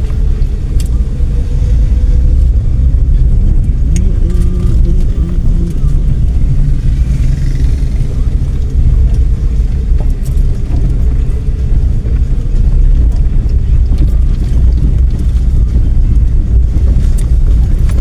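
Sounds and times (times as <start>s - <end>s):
car engine and tyres rumbling: 0.0s - 18.0s.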